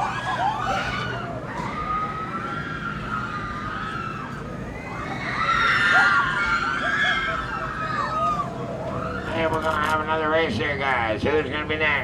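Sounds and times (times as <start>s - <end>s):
crowd murmur: 0.0s - 10.8s
distant riders screaming: 0.0s - 11.1s.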